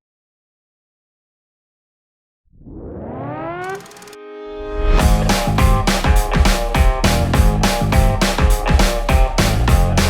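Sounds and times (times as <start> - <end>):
synth tone gliding upward: 2.5 - 5.3.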